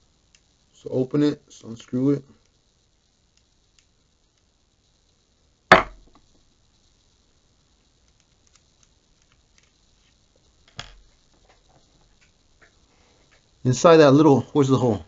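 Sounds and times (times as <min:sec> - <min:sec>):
faint small clicks: 0:00.3 - 0:00.5, 0:02.4 - 0:02.6, 0:03.3 - 0:04.5, 0:08.0 - 0:10.2.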